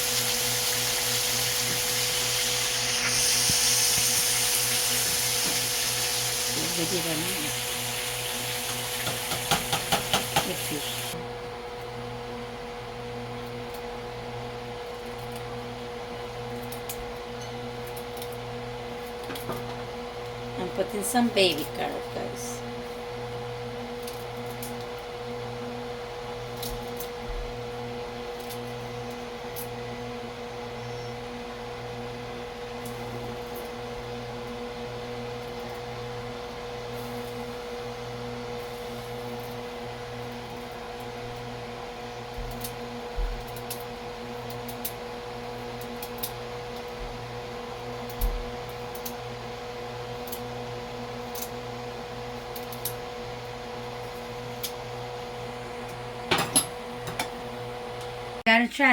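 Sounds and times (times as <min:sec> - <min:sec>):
electric motor hum: 0:00.0 - 0:11.4
kitchen utensils and pots knocking: 0:09.0 - 0:10.8.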